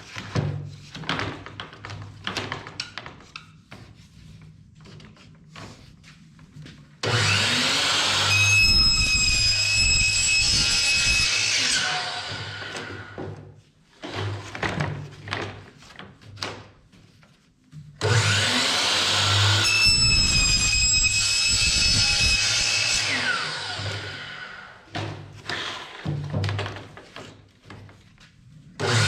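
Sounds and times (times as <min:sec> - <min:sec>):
power saw cutting: 0:07.0 - 0:13.2, 0:18.0 - 0:24.8, 0:28.8 - 0:29.0.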